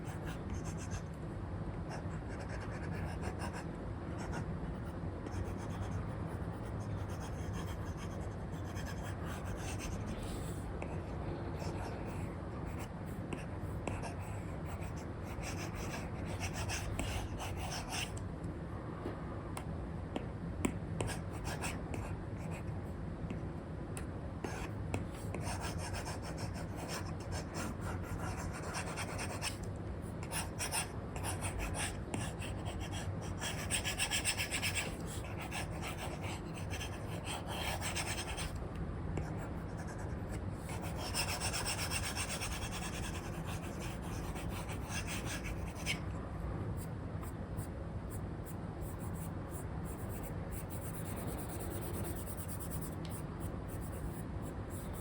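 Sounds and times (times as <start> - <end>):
stylus scratching on screen: 48.8 - 55.0.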